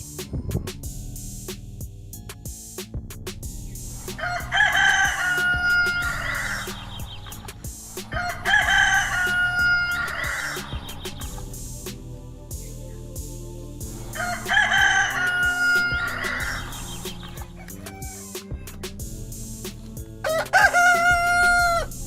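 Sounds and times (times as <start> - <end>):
background music with beat: 0.0 - 22.0
rooster crowing: 4.1 - 6.9, 8.0 - 10.8, 14.1 - 18.5, 20.2 - 22.0.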